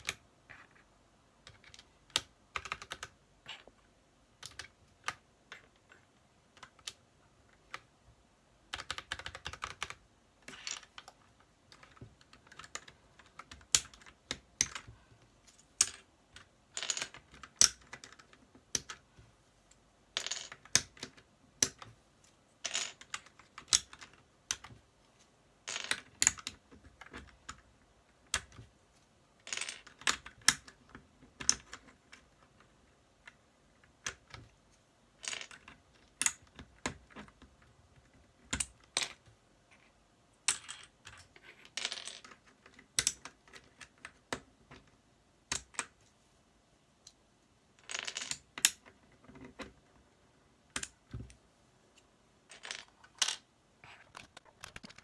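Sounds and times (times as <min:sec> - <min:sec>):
mechanical keyboard clacking: 0:01.5 - 0:03.1, 0:08.7 - 0:10.0.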